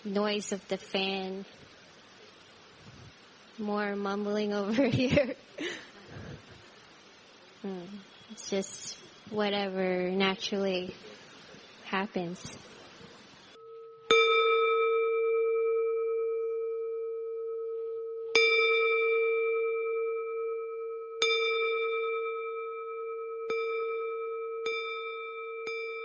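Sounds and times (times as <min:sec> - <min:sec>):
singing bowl ringing: 0:13.5 - 0:26.0.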